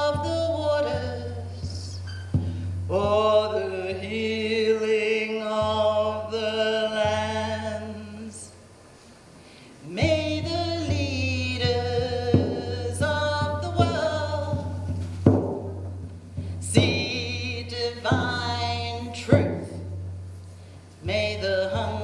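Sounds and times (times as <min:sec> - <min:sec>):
woman singing slow prayer song: 0:00.0 - 0:02.1, 0:02.9 - 0:08.5, 0:09.8 - 0:14.8, 0:16.6 - 0:20.0, 0:21.0 - 0:22.0.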